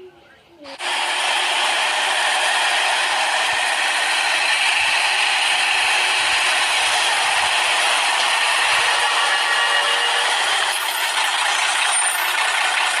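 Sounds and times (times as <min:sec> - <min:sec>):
rattling mechanical noise: 0:00.7 - 0:13.0.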